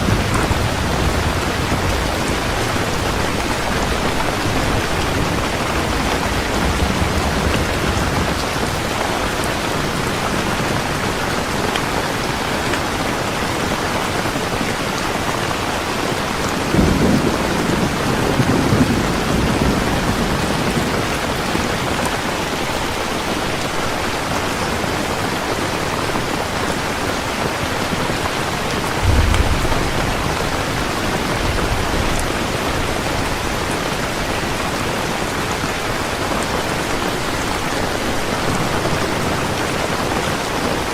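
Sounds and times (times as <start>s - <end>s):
low thunder rumble: 0.0s - 9.9s, 16.6s - 21.8s, 28.8s - 34.4s
heavy rain falling: 0.0s - 40.9s.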